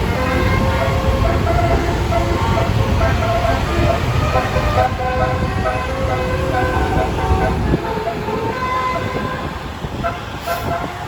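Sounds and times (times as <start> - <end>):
bus engine rumble: 0.0 - 11.0
bus horn playing musical tones: 0.0 - 11.0.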